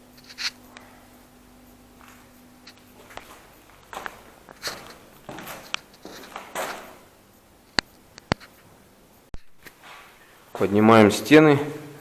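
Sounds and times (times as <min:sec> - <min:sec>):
short scuffs: 0:02.0 - 0:07.1.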